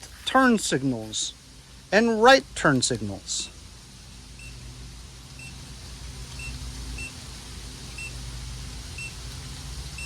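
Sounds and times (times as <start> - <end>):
turn signal beeps: 4.4 - 4.6, 5.4 - 5.6, 6.3 - 7.2, 7.9 - 8.2, 9.0 - 9.2.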